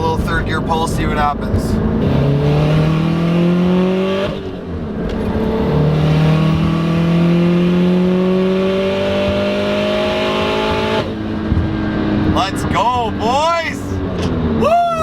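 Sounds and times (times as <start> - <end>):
car engine accelerating hard: 0.0 - 14.8.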